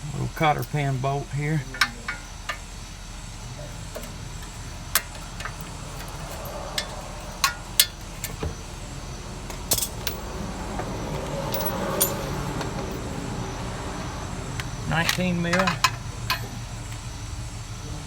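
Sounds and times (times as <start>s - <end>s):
hand tools clinking on metal: 0.5s - 2.7s, 3.8s - 8.4s, 9.5s - 13.1s, 14.6s - 17.1s.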